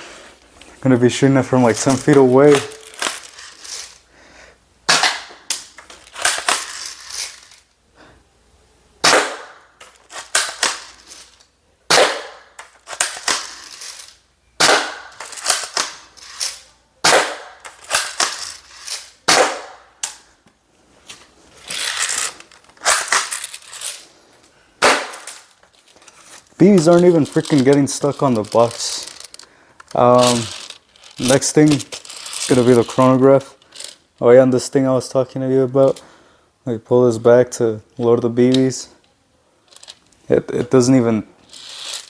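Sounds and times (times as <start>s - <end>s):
airsoft shotgun shots: 9.0s - 9.6s, 19.3s - 19.8s, 24.8s - 25.3s.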